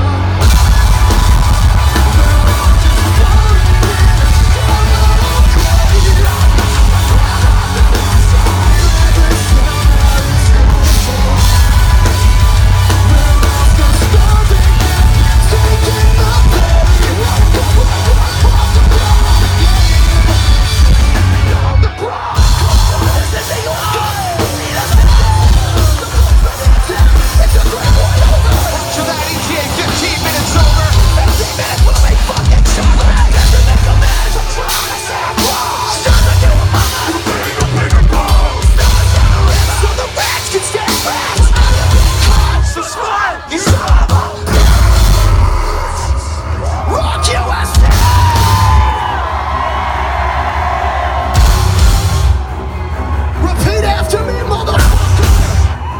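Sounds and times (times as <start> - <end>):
person yelling and singing: 0.0 - 49.4, 53.4 - 55.9
metalcore band playing live: 0.0 - 55.9.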